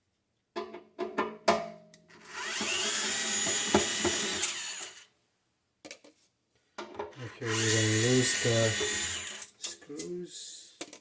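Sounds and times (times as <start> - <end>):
power screwdriver whining: 2.1 - 5.1, 7.2 - 9.5.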